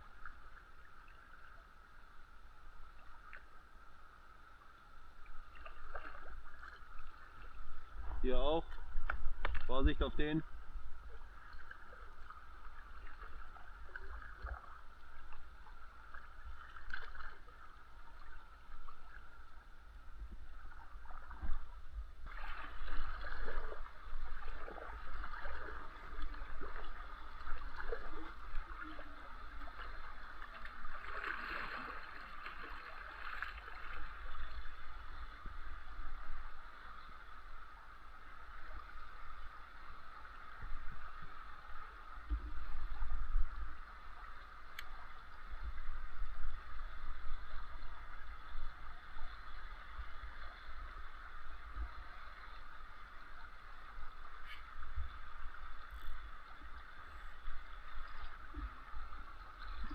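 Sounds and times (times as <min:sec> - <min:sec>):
water gurgling around kayak: 0:00.0 - 0:59.9
water splashing: 0:05.4 - 0:10.4, 0:11.0 - 0:19.4, 0:20.6 - 0:35.6.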